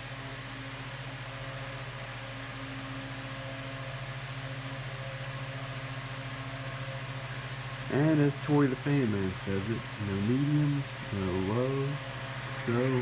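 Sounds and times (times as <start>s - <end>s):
desk fan motor hum: 0.0s - 13.0s.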